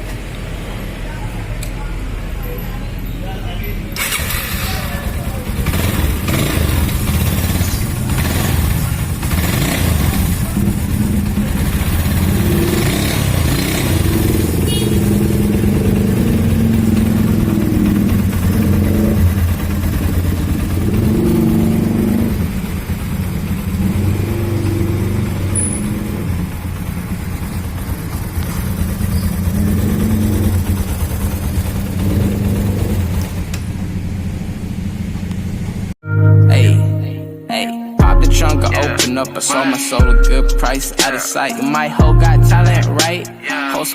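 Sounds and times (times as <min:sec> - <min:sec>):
motorcycle engine running: 0:03.9 - 0:36.0.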